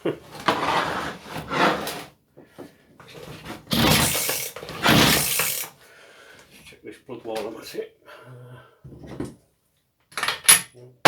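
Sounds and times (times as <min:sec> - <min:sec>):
parts scraping on wooden workbench: 0:00.3 - 0:02.1, 0:03.1 - 0:05.7.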